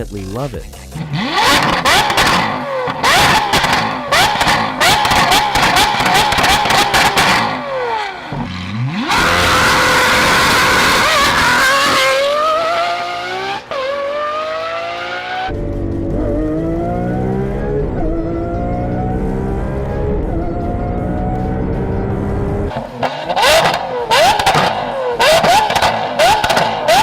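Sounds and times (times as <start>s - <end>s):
car engine revving: 0.9s - 27.0s.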